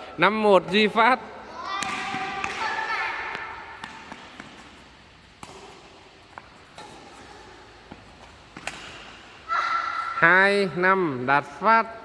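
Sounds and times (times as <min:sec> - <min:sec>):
rackets hitting shuttlecock: 0:01.6 - 0:09.5.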